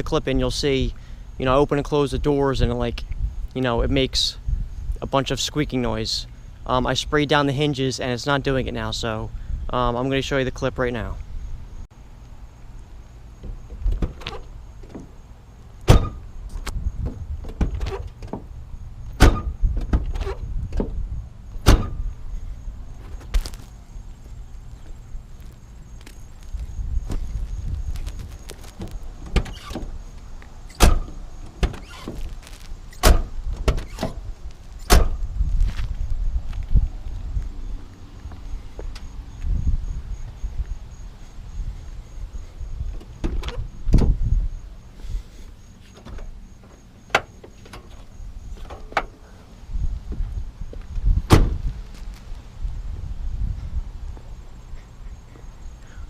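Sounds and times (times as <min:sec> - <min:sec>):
car body creaking: 0:13.4 - 0:15.2, 0:15.8 - 0:21.0, 0:21.6 - 0:22.2, 0:26.1 - 0:35.2
car doors slamming: 0:15.8 - 0:16.3, 0:19.2 - 0:21.0, 0:21.6 - 0:22.1, 0:30.7 - 0:32.2, 0:33.0 - 0:34.2, 0:34.8 - 0:35.2, 0:51.3 - 0:51.6
car door clicks and knocks: 0:15.9 - 0:16.2, 0:30.8 - 0:32.2.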